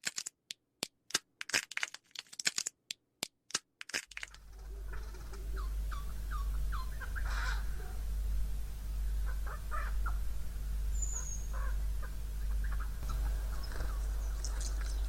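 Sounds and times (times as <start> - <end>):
sharp clicks and crackles: 0.0 - 4.4
harsh bird call: 4.4 - 8.0
low wind rumble: 4.4 - 15.0.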